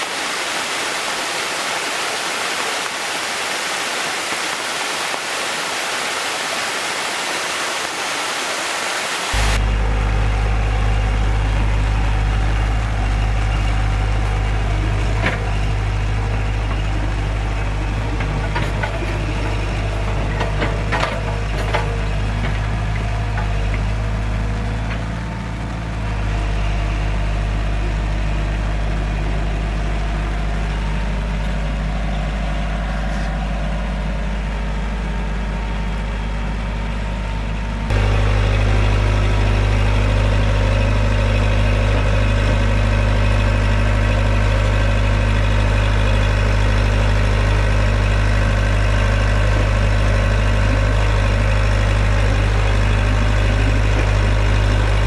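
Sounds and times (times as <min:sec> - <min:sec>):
excavator diesel engine humming: 0:09.3 - 0:55.0.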